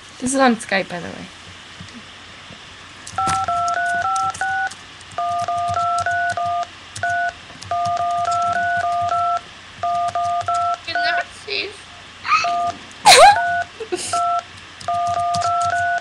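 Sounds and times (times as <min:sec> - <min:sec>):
dial-pad touch tones: 0:03.2 - 0:11.2, 0:12.4 - 0:16.0.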